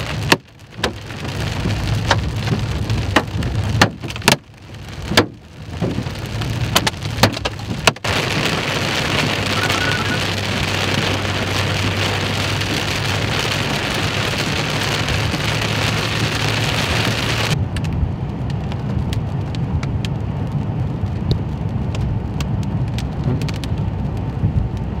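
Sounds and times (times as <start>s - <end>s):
hailstones hitting: 0.0s - 17.6s
hail and rain pelting: 0.0s - 17.8s
low rumble: 0.0s - 25.0s.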